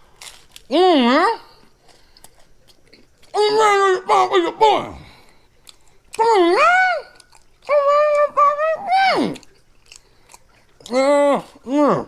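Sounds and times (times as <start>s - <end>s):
person making high-pitched vocal sound: 3.3s - 5.2s, 6.2s - 9.4s, 10.9s - 12.0s.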